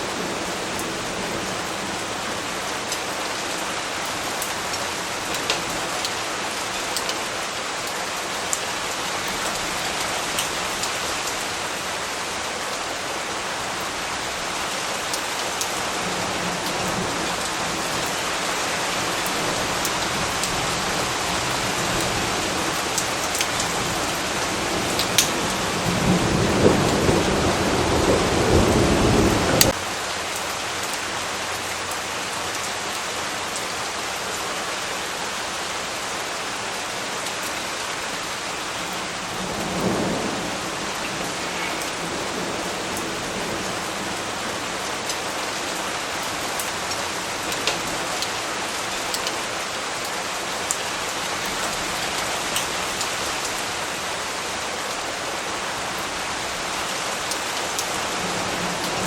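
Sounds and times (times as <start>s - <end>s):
heavy rain hiss: 0.0s - 59.0s
thunder rumble: 19.0s - 29.8s.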